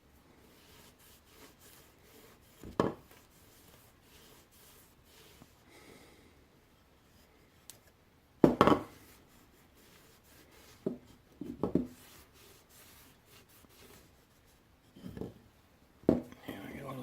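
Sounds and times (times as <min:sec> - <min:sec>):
faint rubbing on wood: 0:00.3 - 0:05.7, 0:08.8 - 0:15.4.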